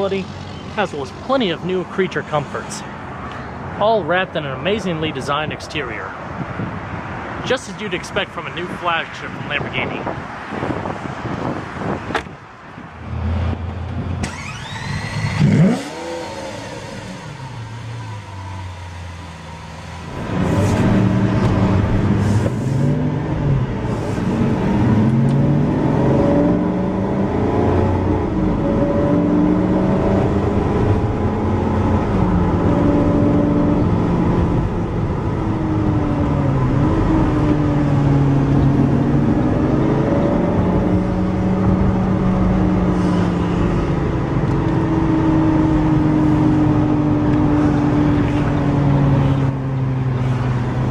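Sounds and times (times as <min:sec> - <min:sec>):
sports car engine revving: 0:13.0 - 0:19.0, 0:20.0 - 0:50.9.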